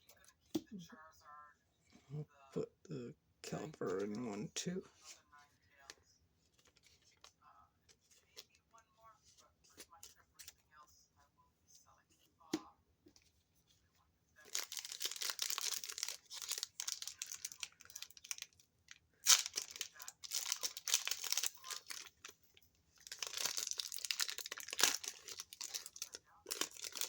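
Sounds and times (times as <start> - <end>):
foil wrapper crinkling and tearing: 14.4 - 22.4, 23.0 - 27.0.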